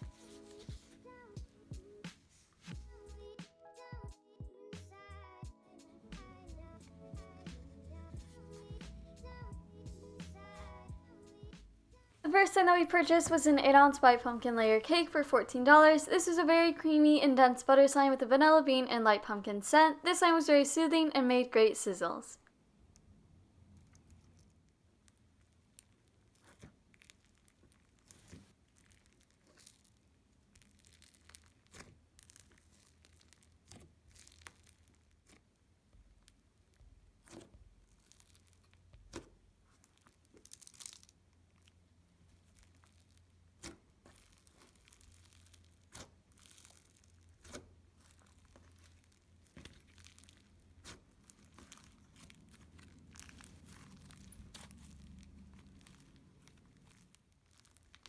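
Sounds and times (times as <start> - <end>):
slime clicking and popping: 23.9 - 41.7, 42.4 - 58.0.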